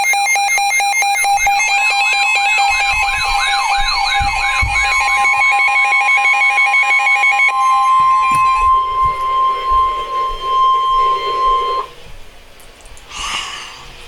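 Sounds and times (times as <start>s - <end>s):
steady beeps: 0.0s - 12.0s
steady high-pitched tone: 0.0s - 12.3s
sweeping electronic wail: 1.1s - 12.4s
two-note electronic warble: 1.2s - 12.1s.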